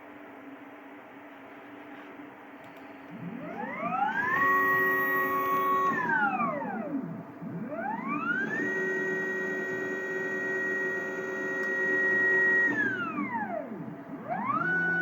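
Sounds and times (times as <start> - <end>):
stepper motor whine: 3.1 - 15.0.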